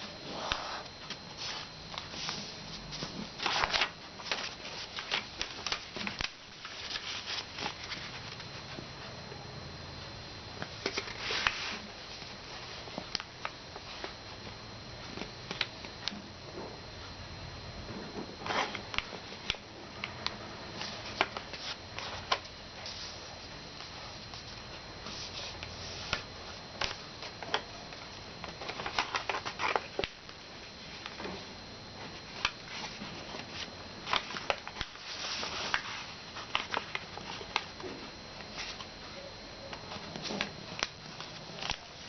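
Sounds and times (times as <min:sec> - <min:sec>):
paper crackling and rustling: 0:00.3 - 0:08.8, 0:10.8 - 0:14.2, 0:18.4 - 0:31.4, 0:32.0 - 0:38.9, 0:39.8 - 0:42.0
paper folds clicking: 0:03.4 - 0:08.4, 0:35.7 - 0:37.7, 0:40.0 - 0:42.0.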